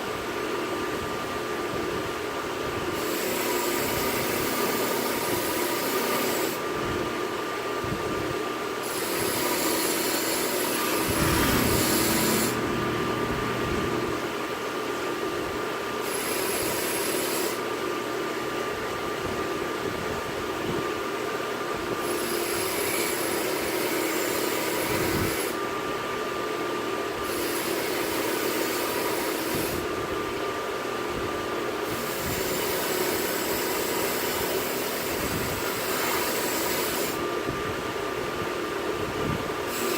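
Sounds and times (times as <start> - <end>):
blade grinding on belt: 8.8 - 14.1
belt grinder motor whine: 8.9 - 14.4.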